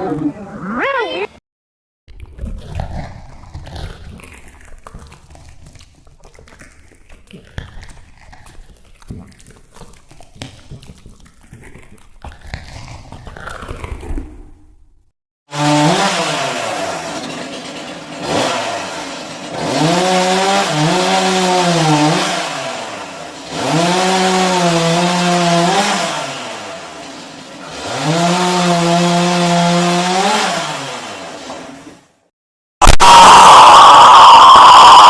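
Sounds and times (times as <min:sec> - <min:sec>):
chainsaw revving and cutting: 0:15.5 - 0:32.2.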